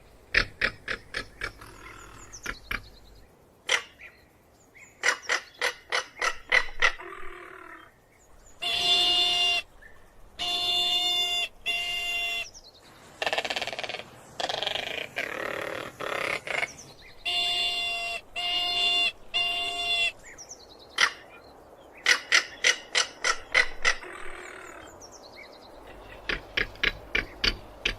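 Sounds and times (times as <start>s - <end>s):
bird harsh nasal calls: 0.2s - 4.2s, 4.9s - 7.9s, 8.5s - 9.8s, 10.4s - 20.4s, 22.0s - 24.9s, 25.8s - 27.9s
bird rapid dry clacking: 26.2s - 27.9s.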